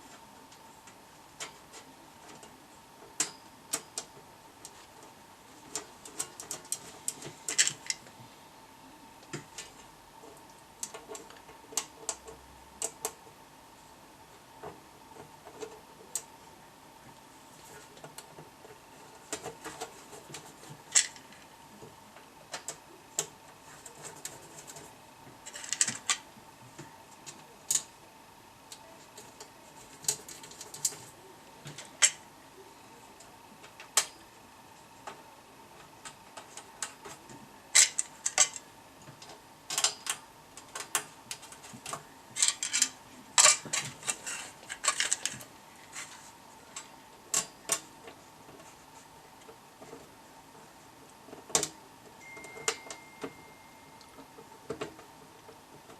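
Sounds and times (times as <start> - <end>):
faint steady whine: 0.0 - 55.9
small parts and tools clattering: 19.2 - 21.4, 25.4 - 26.2, 36.4 - 46.2.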